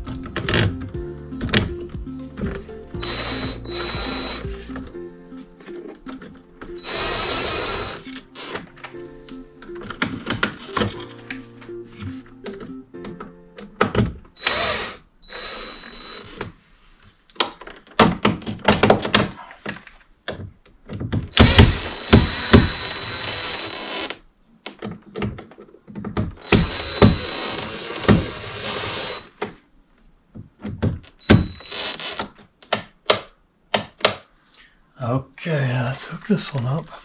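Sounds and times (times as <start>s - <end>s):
hissing with high whine: 2.4s - 5.0s.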